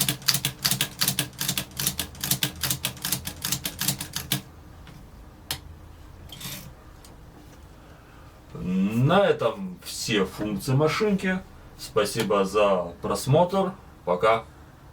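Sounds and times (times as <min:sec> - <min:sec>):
typewriter key strikes: 0:00.0 - 0:04.5
typewriter mechanism clicks: 0:00.0 - 0:04.5.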